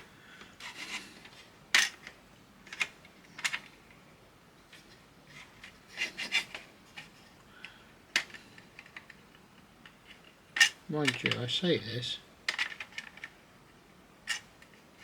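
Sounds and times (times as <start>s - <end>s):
clatter of plastic parts: 0.4s - 4.0s, 4.7s - 11.6s, 12.5s - 13.4s, 14.2s - 15.0s
plastic parts clicking and tapping: 0.4s - 4.0s, 5.4s - 11.5s, 12.5s - 13.4s, 14.2s - 14.8s.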